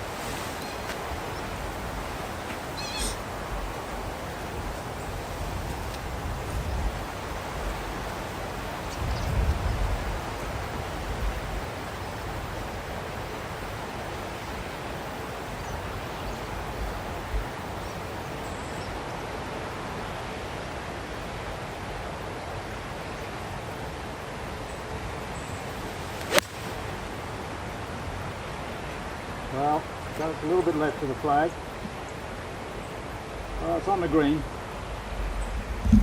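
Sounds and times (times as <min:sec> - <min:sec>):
wind buffeting microphone: 0:00.0 - 0:11.7, 0:34.8 - 0:36.0
golf club striking ball: 0:26.2 - 0:26.9.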